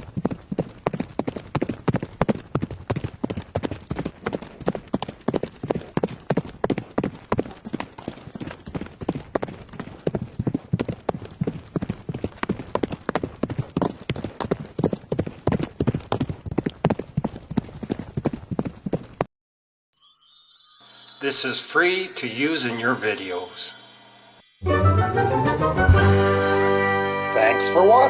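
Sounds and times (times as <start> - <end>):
horse hoofbeats galloping: 0.0 - 19.3.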